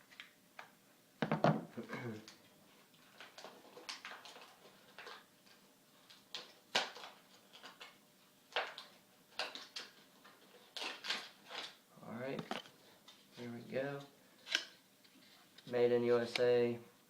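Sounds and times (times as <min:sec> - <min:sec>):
packaging rustling: 0:03.0 - 0:11.8.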